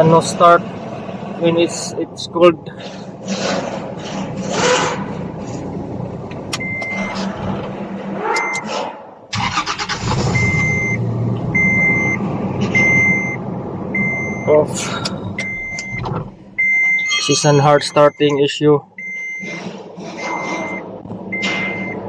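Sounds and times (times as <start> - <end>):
truck engine starting: 0.0 - 22.0
dashboard warning chime beeping: 6.6 - 7.2, 8.4 - 8.7, 10.3 - 12.2, 12.8 - 14.7, 15.3 - 19.5, 20.2 - 22.0.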